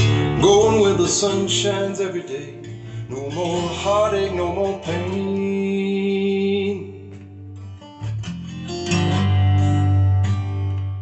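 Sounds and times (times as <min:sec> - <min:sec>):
strummed acoustic guitar with bass: 0:00.0 - 0:11.0.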